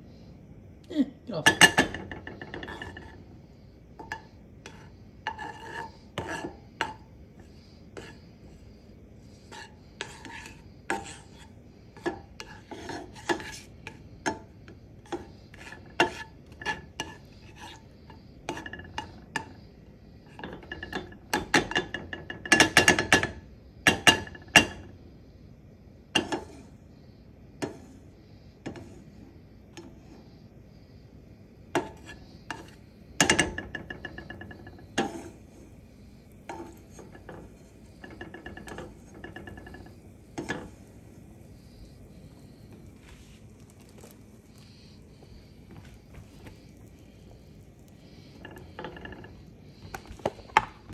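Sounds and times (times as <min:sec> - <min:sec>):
metal utensil clinking on pan: 0:20.3 - 0:24.8, 0:36.5 - 0:40.7.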